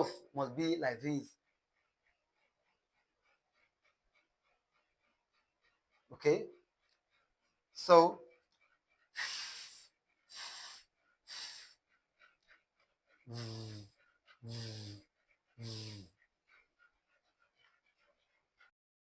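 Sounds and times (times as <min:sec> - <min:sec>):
person hissing th sounds: 0:09.2 - 0:11.8, 0:13.3 - 0:16.1
person buzzing voiced th: 0:13.3 - 0:15.0, 0:15.6 - 0:16.1.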